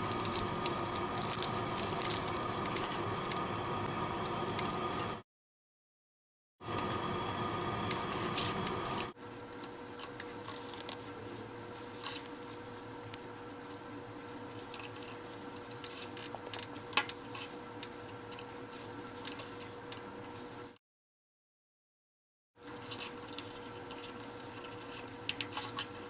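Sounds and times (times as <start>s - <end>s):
steady background hum: 0.0s - 5.2s, 6.6s - 20.8s, 22.6s - 26.0s.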